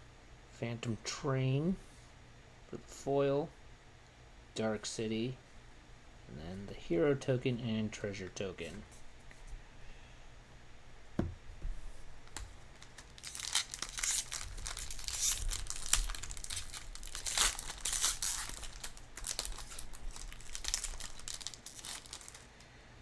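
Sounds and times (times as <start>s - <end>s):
foil wrapper tearing and crinkling: 12.2s - 22.6s.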